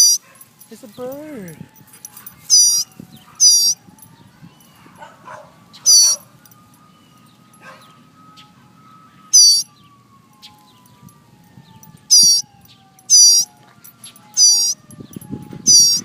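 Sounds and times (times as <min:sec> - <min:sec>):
fledgling bird begging calls: 0:00.0 - 0:00.2, 0:02.5 - 0:03.8, 0:05.8 - 0:06.2, 0:09.3 - 0:09.7, 0:12.1 - 0:12.5, 0:13.1 - 0:13.5, 0:14.4 - 0:14.8, 0:15.7 - 0:16.0.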